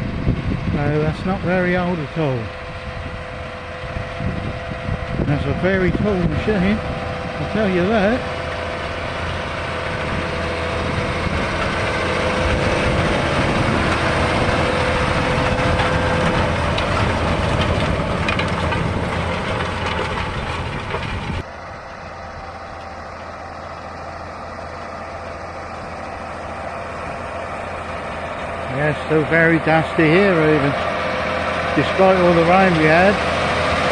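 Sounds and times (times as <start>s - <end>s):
tractor diesel engine running: 0.0s - 33.9s.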